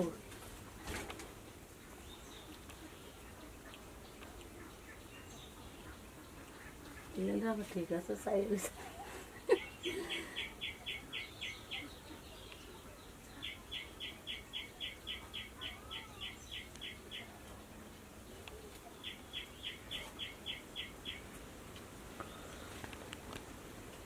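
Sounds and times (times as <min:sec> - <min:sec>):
bird chirping: 0:01.4 - 0:07.6, 0:09.4 - 0:21.4.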